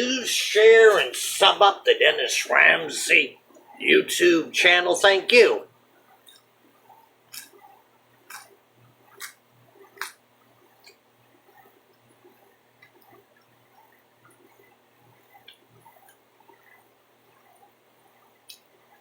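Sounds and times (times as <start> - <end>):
person chewing: 7.3 - 10.2.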